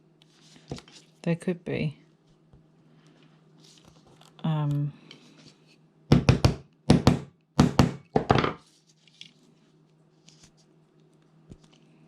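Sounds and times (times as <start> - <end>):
tool knocking on plastic: 6.1 - 8.6.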